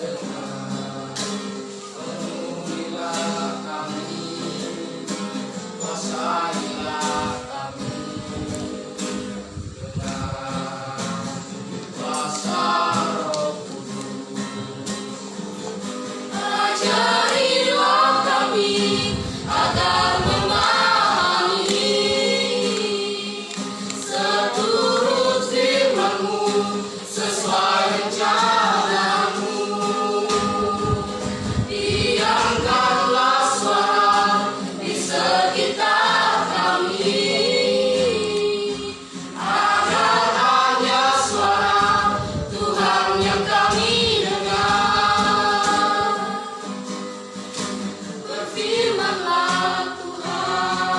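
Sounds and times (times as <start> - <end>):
choir singing: 0.0 - 50.9.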